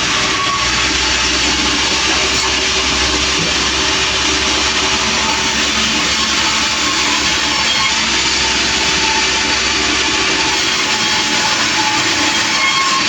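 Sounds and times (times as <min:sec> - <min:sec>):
sawmill machine noise: 0:00.0 - 0:13.0
steady engine hum: 0:00.0 - 0:13.0.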